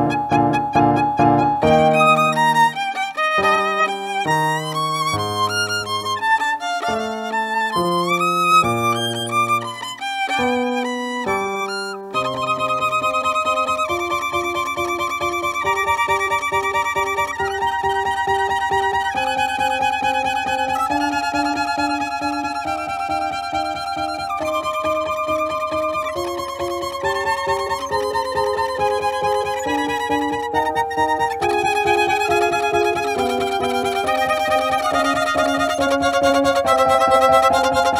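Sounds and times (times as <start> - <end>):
low accompaniment: 0.0 - 37.9
violin playing: 0.0 - 37.9.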